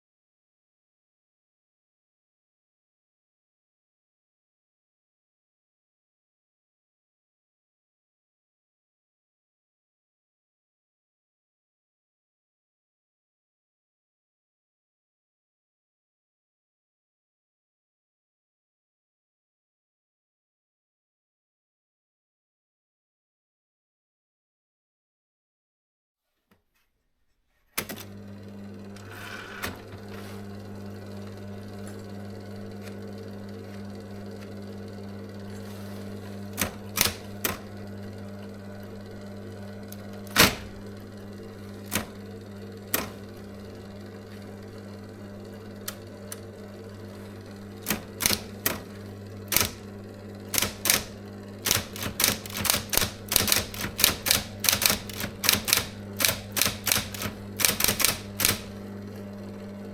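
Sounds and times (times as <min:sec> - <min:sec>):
typewriter motor humming: 0:35.4 - 0:59.9
typewriter switching on: 0:35.6 - 0:37.8, 0:39.9 - 0:41.0, 0:41.6 - 0:43.9, 0:45.8 - 0:59.3
typewriter key strikes: 0:47.9 - 0:48.8, 0:49.5 - 0:49.8, 0:50.5 - 0:58.7.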